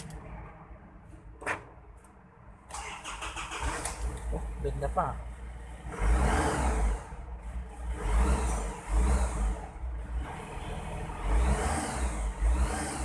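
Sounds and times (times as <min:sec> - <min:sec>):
diesel engine revving: 0:05.5 - 0:13.0.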